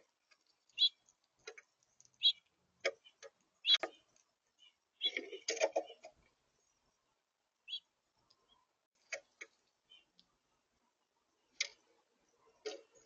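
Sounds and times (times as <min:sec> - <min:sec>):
bills pecking and tapping: 0:00.0 - 0:06.4, 0:08.0 - 0:13.0
bird chirp: 0:00.5 - 0:07.0, 0:07.6 - 0:10.4.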